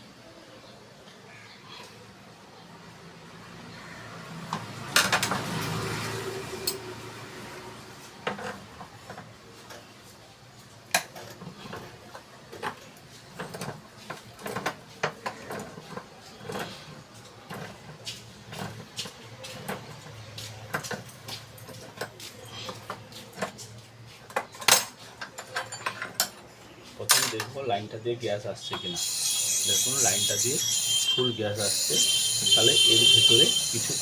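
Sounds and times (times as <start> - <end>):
metal stove parts clinking: 24.3 - 26.5.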